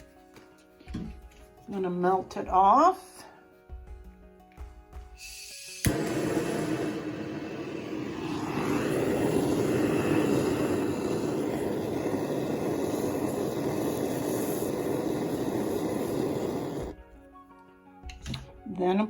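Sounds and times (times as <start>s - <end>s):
torch flame blowing: 5.2s - 17.0s.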